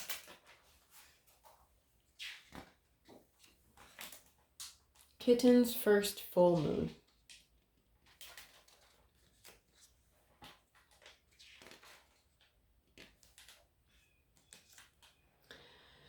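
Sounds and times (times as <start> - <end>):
paper pages rustling: 0.0 - 5.2, 6.5 - 15.2.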